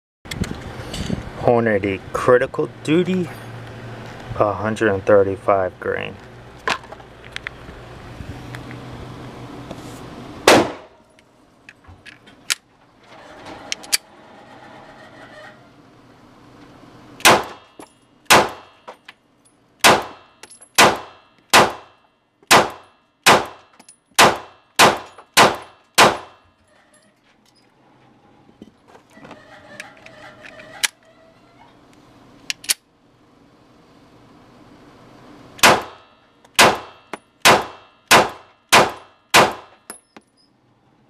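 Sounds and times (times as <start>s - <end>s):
pistol shots: 10.5s - 10.9s, 17.2s - 17.7s, 18.3s - 18.8s, 19.8s - 21.9s, 22.5s - 23.6s, 24.2s - 26.4s, 35.6s - 36.0s, 36.6s - 39.8s.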